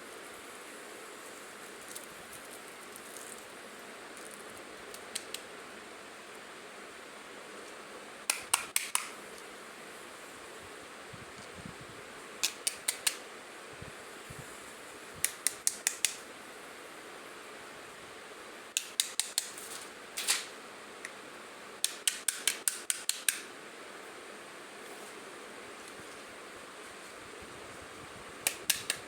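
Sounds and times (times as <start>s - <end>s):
toy pieces clicking and tapping: 18.8s - 19.5s.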